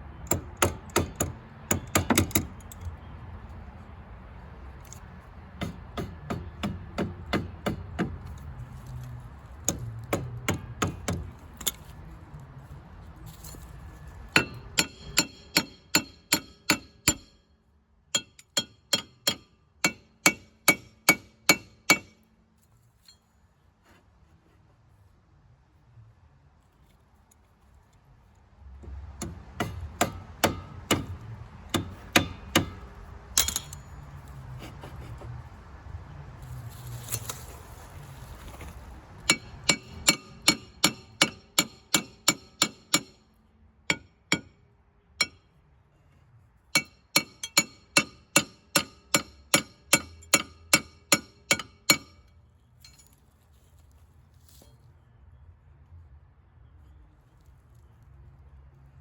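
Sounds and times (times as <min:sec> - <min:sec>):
hammer tapping on metal: 0:00.3 - 0:02.8, 0:05.6 - 0:08.3, 0:09.6 - 0:11.8, 0:14.4 - 0:17.4, 0:18.2 - 0:22.2, 0:28.8 - 0:33.8, 0:39.3 - 0:43.2, 0:43.9 - 0:44.6, 0:46.8 - 0:52.2.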